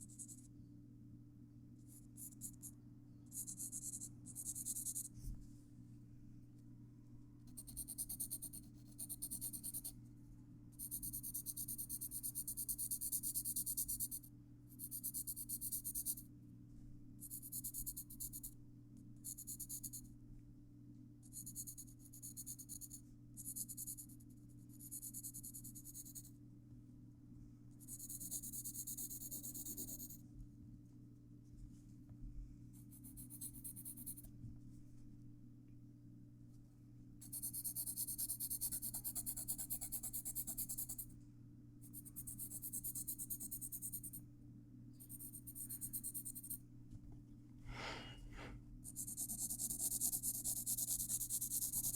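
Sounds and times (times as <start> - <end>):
pencil scratching on paper: 37.2 - 41.0, 45.0 - 46.6, 48.9 - 51.9.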